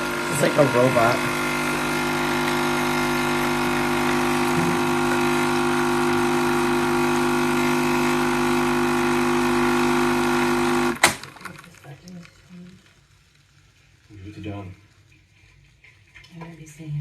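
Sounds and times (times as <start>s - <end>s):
coffee machine pump humming: 0.0s - 13.0s.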